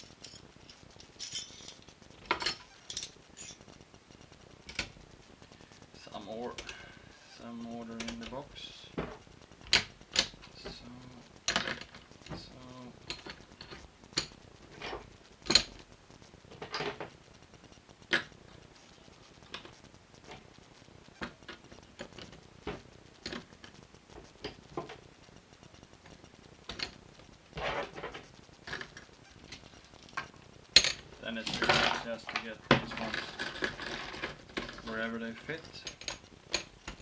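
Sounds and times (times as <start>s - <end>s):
metal tools clinking: 1.2s - 3.6s.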